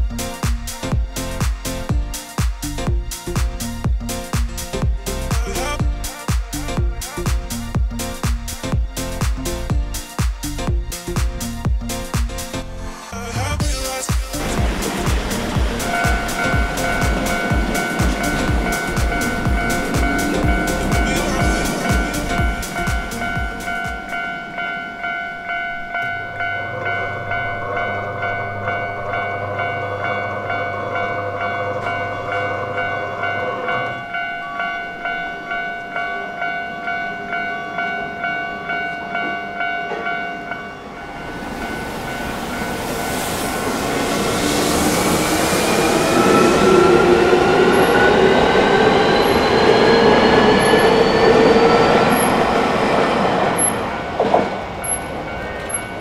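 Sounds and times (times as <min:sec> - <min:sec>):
electric train passing: 0:10.9 - 0:56.0
level crossing warning bell: 0:14.0 - 0:44.2, 0:45.6 - 0:56.0.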